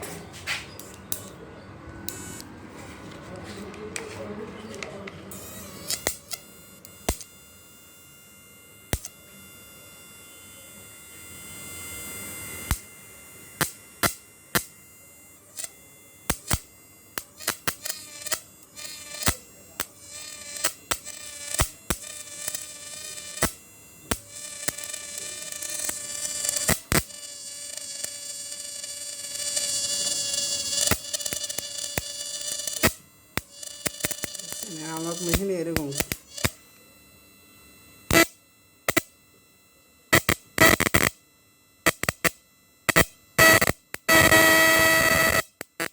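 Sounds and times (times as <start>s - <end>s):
electrical whine and hum: 0.0s - 45.9s
sharp clicks: 5.8s - 7.3s, 30.8s - 36.6s, 38.1s - 38.3s.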